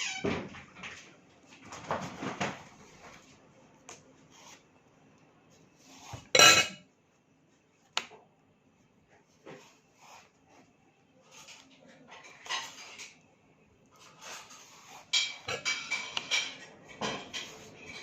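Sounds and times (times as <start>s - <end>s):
knife scraping mango: 14.0s - 16.7s.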